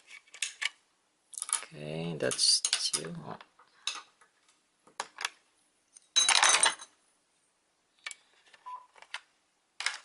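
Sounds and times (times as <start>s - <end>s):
small parts clinking and rattling: 0.2s - 1.7s, 6.1s - 7.0s.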